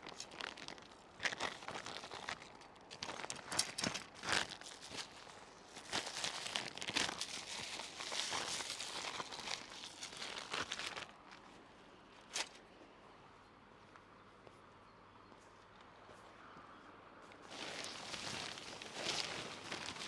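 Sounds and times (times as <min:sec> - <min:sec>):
dry material crinkling and tearing: 0:00.0 - 0:11.4, 0:17.4 - 0:20.0.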